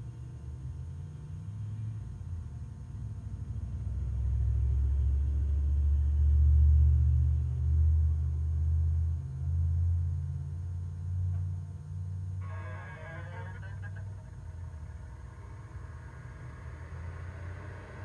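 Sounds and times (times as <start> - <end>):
inverter charger humming: 9.0 - 18.0.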